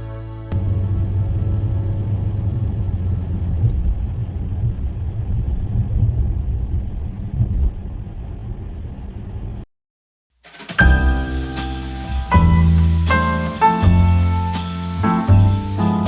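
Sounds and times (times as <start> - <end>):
car driving heard from inside: 0.5 - 9.6.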